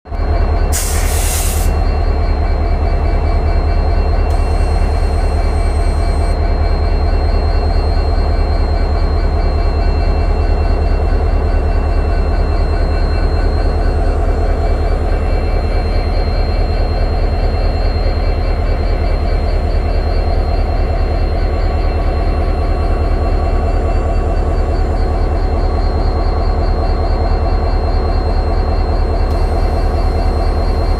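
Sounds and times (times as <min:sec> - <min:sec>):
locomotive engine humming: 0:00.2 - 0:30.9
burst of hiss: 0:00.8 - 0:01.7.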